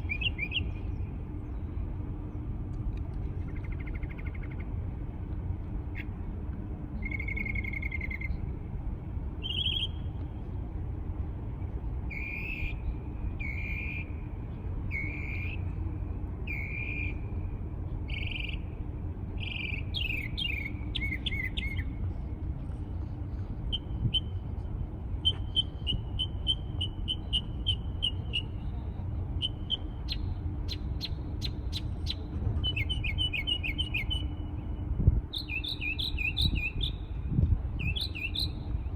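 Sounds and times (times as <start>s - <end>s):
songbird singing: 0.0s - 2.5s, 7.0s - 8.5s, 9.4s - 10.2s, 12.1s - 15.7s, 16.4s - 17.3s, 18.0s - 18.8s, 19.4s - 22.0s, 23.6s - 24.4s, 25.2s - 38.9s
low background rumble: 0.0s - 38.9s.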